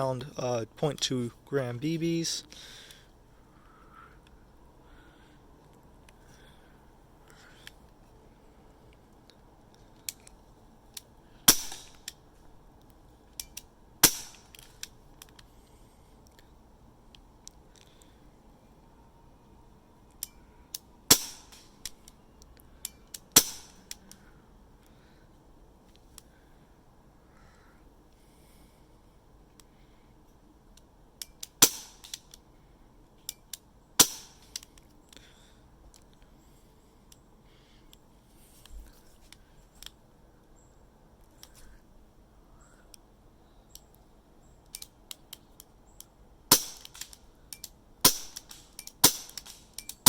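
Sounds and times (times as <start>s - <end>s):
airsoft pistol shots popping: 11.5s - 12.0s, 14.0s - 14.5s, 21.1s - 21.6s, 23.4s - 23.8s, 31.6s - 32.1s, 34.0s - 34.5s, 46.5s - 47.1s, 48.0s - 49.6s.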